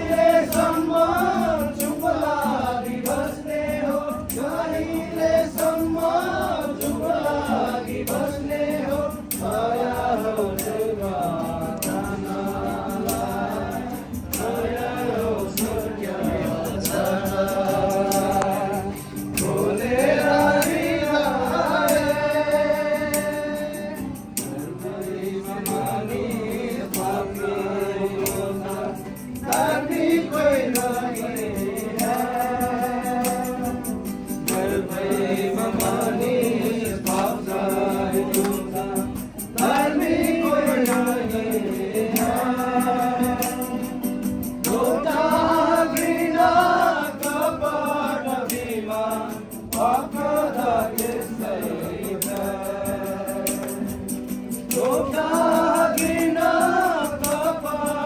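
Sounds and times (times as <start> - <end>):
group singing worship song: 0.0 - 58.0
instrumental music with beat: 0.0 - 58.0.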